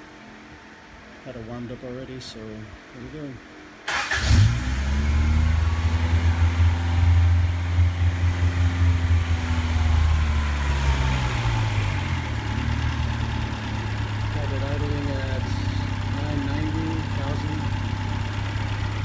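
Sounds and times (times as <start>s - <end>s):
car engine fast idle: 3.9s - 19.0s.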